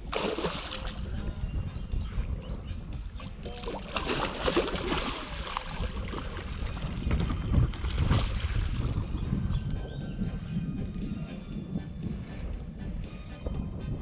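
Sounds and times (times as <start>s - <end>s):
water sloshing around boat: 0.0s - 1.2s, 3.2s - 9.3s.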